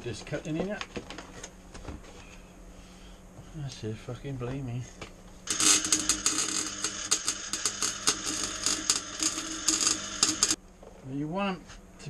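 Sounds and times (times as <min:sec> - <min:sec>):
welder crackling: 0:05.4 - 0:10.6.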